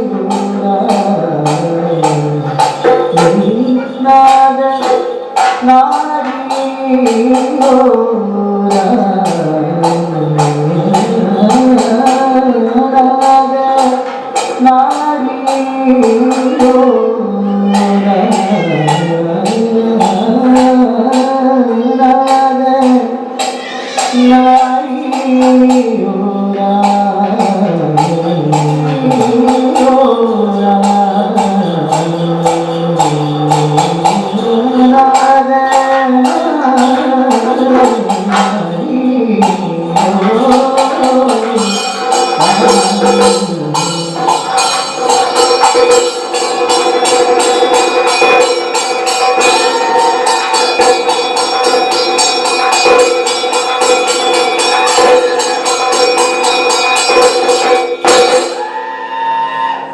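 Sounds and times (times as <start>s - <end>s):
man singing slow melody: 0.0s - 5.0s, 5.6s - 14.0s, 24.1s - 44.7s
metal hand cymbals: 0.0s - 8.0s, 8.7s - 58.9s.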